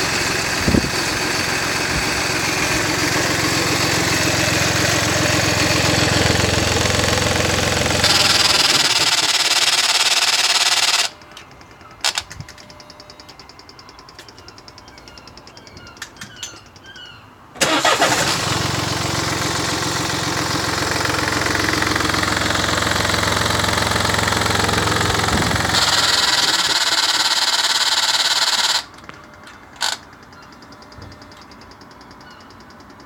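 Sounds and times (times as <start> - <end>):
diesel engine running: 0.0 - 12.4, 17.6 - 33.0
fast faint clicking from engine: 24.7 - 33.0.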